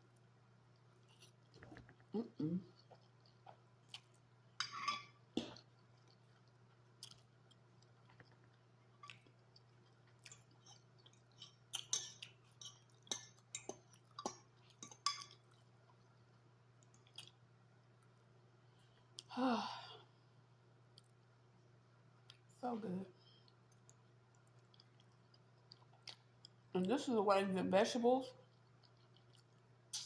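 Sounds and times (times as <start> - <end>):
faint low hum: 0.0 - 30.0
wet mouth smacks and chewing: 23.7 - 26.6.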